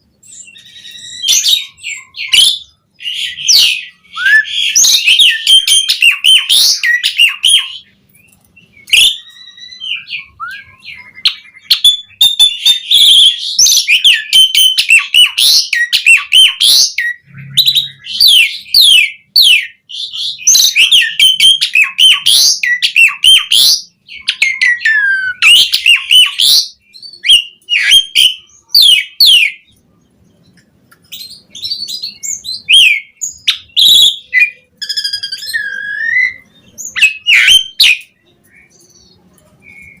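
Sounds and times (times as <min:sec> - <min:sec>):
starling chattering and whistling: 0:08.6 - 0:29.7, 0:31.2 - 0:40.0.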